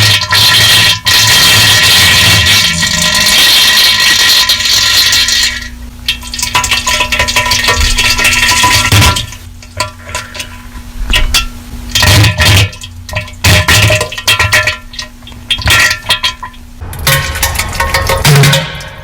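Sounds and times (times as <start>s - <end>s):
distorted diarrhea sound effect: 1.8s - 4.2s
low hum: 1.8s - 9.7s, 16.7s - 19.0s.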